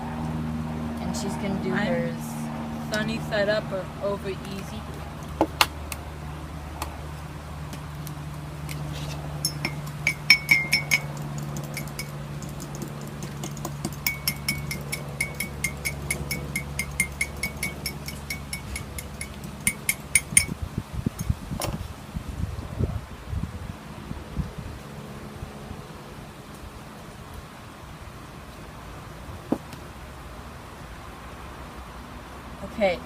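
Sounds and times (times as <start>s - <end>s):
steady low hum: 0.0s - 26.4s
fork clinking beating egg: 9.4s - 20.6s.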